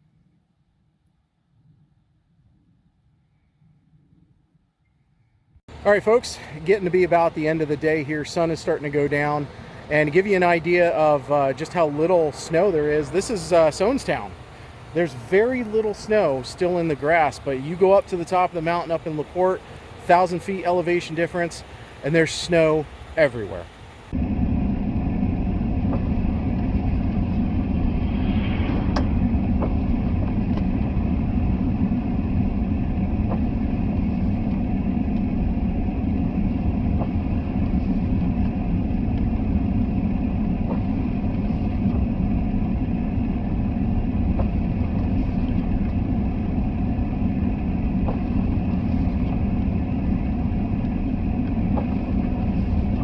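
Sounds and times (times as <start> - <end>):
road noise: 5.7 - 53.0
car engine: 24.1 - 53.0.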